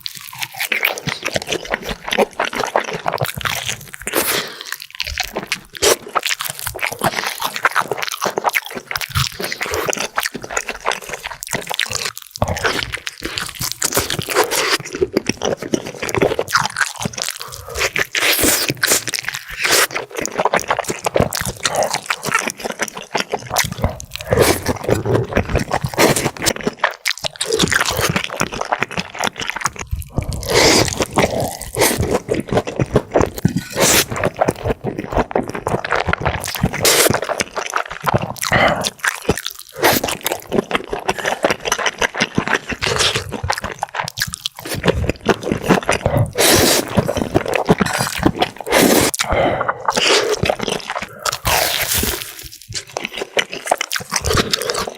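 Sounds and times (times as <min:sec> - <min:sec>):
crunchy bites and chewing: 0:00.0 - 0:54.9.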